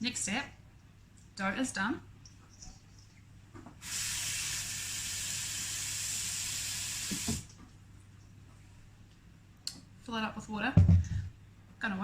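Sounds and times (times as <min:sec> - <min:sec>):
tap water running into bowl: 0:07.0 - 0:07.5.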